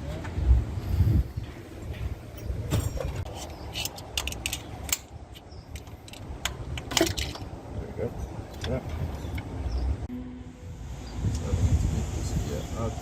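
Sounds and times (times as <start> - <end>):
metallic clicks of tools and parts: 1.9 - 7.5.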